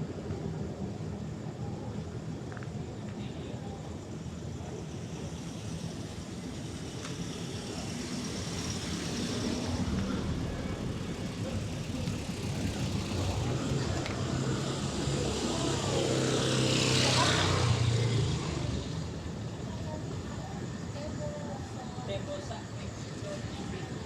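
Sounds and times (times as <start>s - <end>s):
rumble of cars: 0.0s - 24.0s
vehicle engine passing close: 7.4s - 19.4s.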